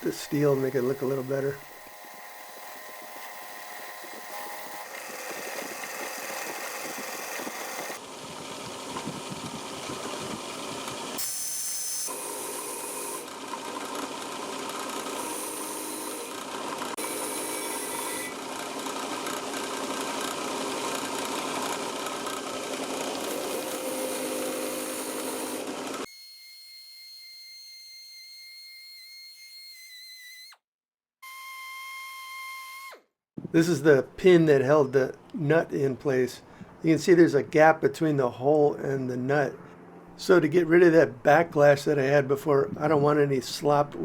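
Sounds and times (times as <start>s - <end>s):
wire wheel grinding steel: 12.1s - 26.1s.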